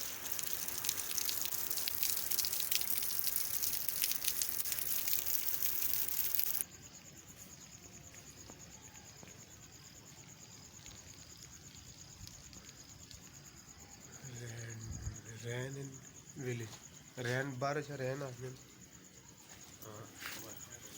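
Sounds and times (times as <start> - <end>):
rain pattering hard: 0.0 - 6.6
faint drips: 0.0 - 6.7, 10.1 - 14.7
cricket trill: 0.0 - 20.9.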